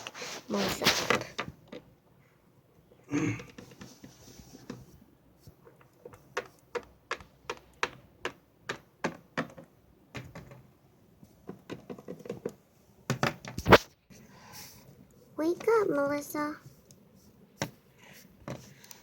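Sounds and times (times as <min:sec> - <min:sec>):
plastic toy figures clicking: 0:05.8 - 0:10.7
toy figures knocking: 0:06.3 - 0:10.7.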